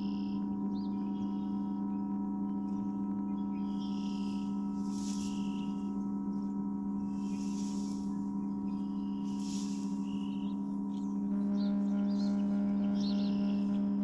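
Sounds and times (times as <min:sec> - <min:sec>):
electronic drone of low tones: 0:00.0 - 0:14.0
hissy swell: 0:03.6 - 0:14.0.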